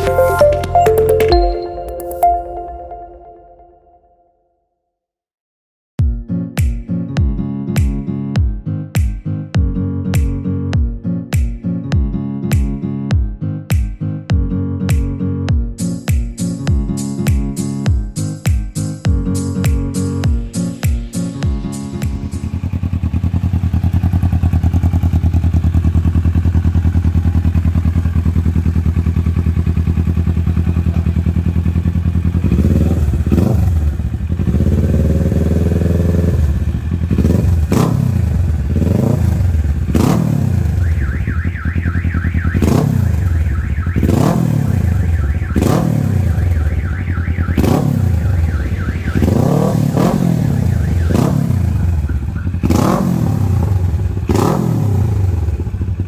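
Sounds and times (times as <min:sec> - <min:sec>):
motorcycle engine idling and revving: 0:20.0 - 0:56.0.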